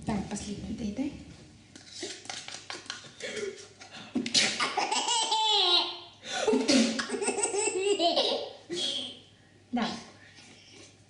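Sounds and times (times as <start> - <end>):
small child laughing: 4.6 - 9.2.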